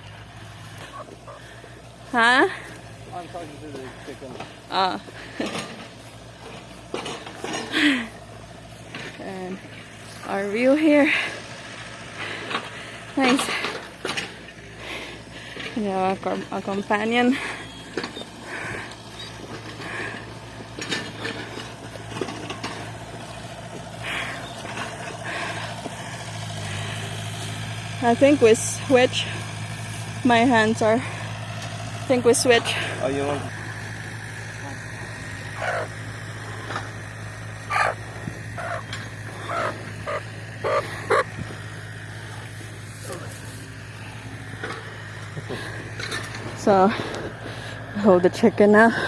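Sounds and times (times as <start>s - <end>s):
backhoe diesel engine: 0.0s - 49.0s
chicken clucking and squawking: 0.8s - 1.6s, 34.7s - 36.0s, 37.6s - 41.4s.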